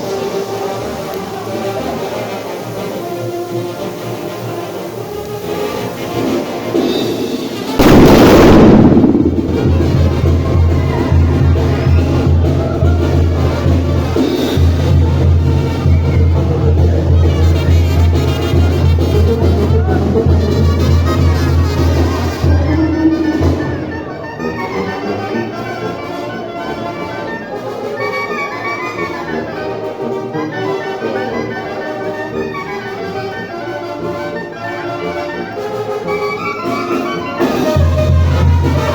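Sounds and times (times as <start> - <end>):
brass band playing: 0.0 - 38.9
heavy low bass: 7.8 - 10.6.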